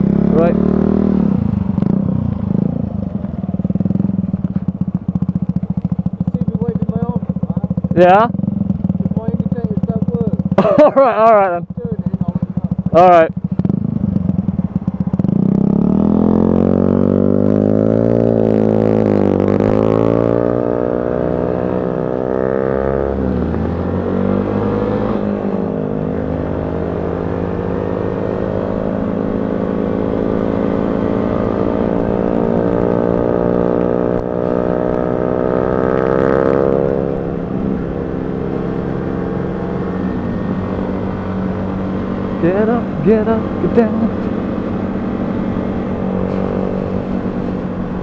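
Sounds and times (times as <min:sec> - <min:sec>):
motorcycle engine changing gears: 0:00.0 - 0:48.0.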